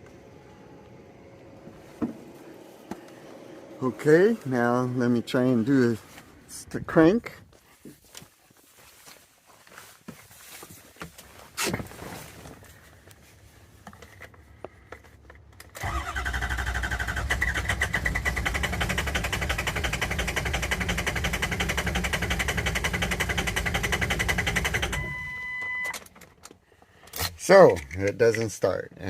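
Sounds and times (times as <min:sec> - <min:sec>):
diesel engine starter cranking: 0:15.6 - 0:28.1.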